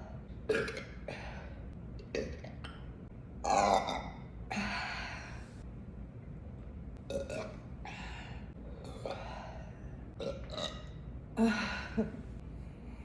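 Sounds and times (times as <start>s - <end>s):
woman burping: 0.5s - 1.0s.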